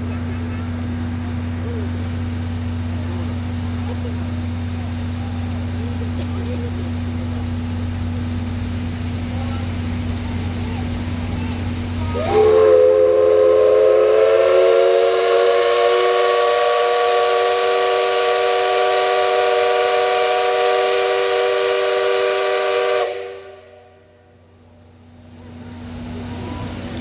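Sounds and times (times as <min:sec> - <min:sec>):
steam hissing: 0:00.0 - 0:24.1, 0:25.0 - 0:27.0
steam locomotive whistle: 0:12.0 - 0:24.4.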